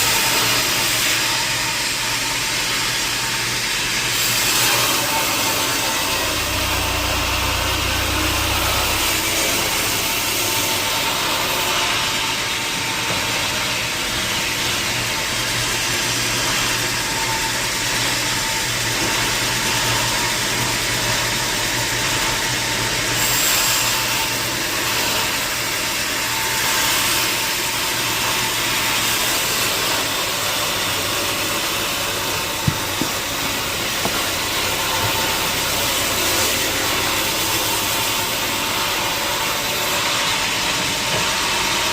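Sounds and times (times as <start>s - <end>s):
sawmill machinery drone: 0.0s - 41.9s
sharp knocks: 32.5s - 35.4s.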